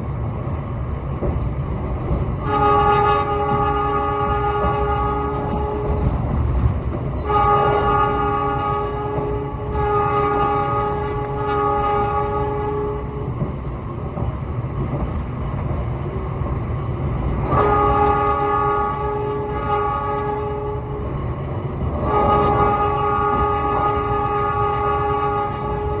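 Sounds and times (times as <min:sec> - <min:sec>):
train running rumble: 0:00.0 - 0:26.0
train horn blasts: 0:02.4 - 0:13.4, 0:17.4 - 0:21.1, 0:21.8 - 0:26.0.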